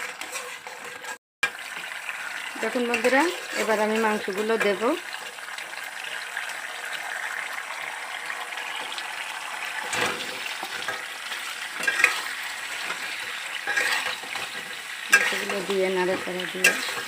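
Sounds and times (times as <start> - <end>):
spoon scraping and knocking on pan: 0.0 - 2.0, 2.7 - 5.4, 9.8 - 17.0
sauce sizzling in a frying pan: 0.0 - 17.0.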